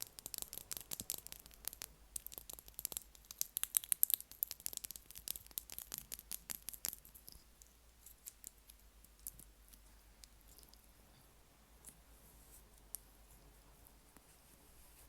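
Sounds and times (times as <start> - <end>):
crisp clicks and taps: 0.0 - 10.8.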